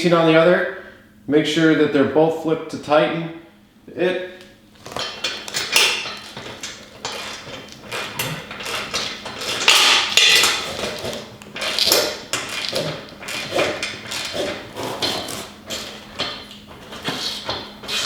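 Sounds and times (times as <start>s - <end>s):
wrench scraping: 4.8s - 18.0s
metal clinks of wrenches: 4.9s - 15.3s.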